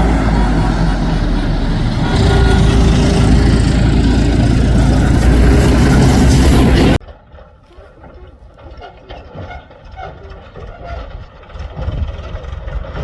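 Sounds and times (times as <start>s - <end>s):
heavy diesel engine running: 0.0s - 7.0s.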